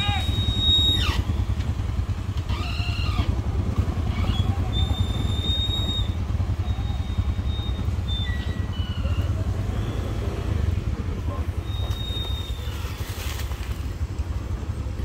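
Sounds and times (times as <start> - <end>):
high whistling tones: 0.0 - 3.3, 4.1 - 10.6, 11.6 - 13.2
engine rumbling: 0.0 - 15.0.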